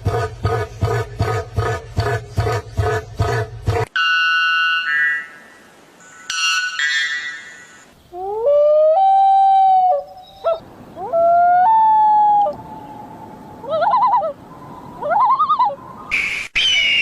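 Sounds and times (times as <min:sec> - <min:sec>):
bird wailing call: 0:13.6 - 0:14.4, 0:15.0 - 0:17.0.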